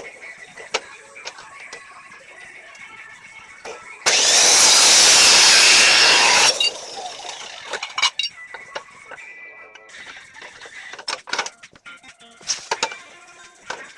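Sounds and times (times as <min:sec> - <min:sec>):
power saw cutting steel: 0:04.1 - 0:08.3.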